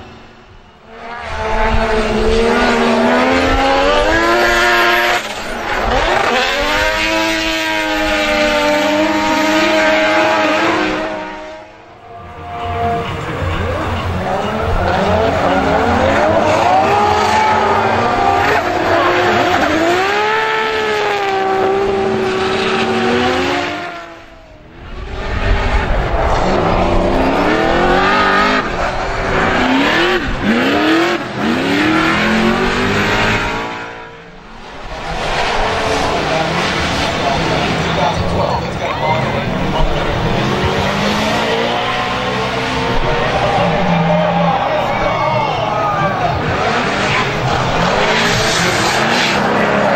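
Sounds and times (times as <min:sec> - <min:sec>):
car engines revving: 0:00.0 - 0:49.9.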